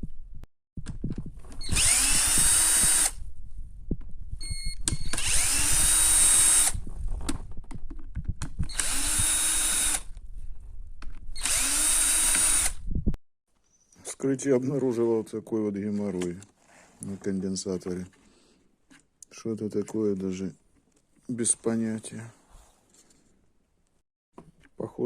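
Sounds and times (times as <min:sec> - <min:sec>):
cordless drill spinning: 0:01.3 - 0:03.2, 0:04.4 - 0:06.9, 0:08.6 - 0:10.2, 0:11.3 - 0:12.8.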